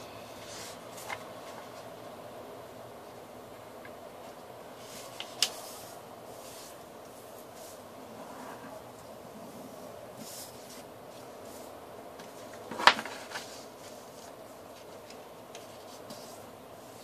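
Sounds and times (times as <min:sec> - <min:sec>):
paper rustling: 0:00.4 - 0:01.9, 0:04.2 - 0:07.8, 0:10.2 - 0:17.0
paper snapping: 0:05.2 - 0:05.6.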